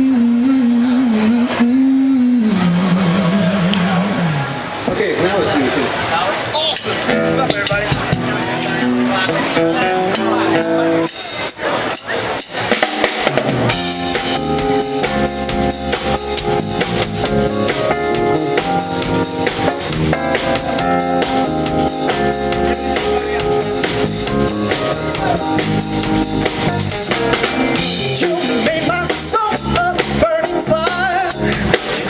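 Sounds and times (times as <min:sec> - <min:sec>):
bass guitar: 0:00.0 - 0:04.9, 0:06.9 - 0:32.0
live band playing: 0:00.0 - 0:32.0
drum kit hits: 0:07.1 - 0:32.0.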